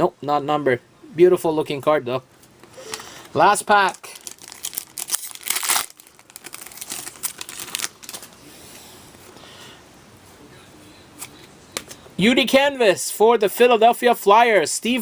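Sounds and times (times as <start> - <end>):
wrapper crinkling: 3.7 - 8.4
wrapper tearing open: 3.8 - 8.4.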